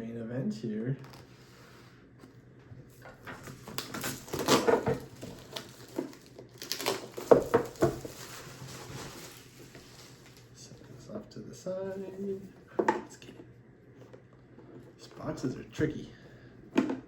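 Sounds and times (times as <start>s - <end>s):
cardboard packaging scraping and rustling: 3.1s - 10.6s.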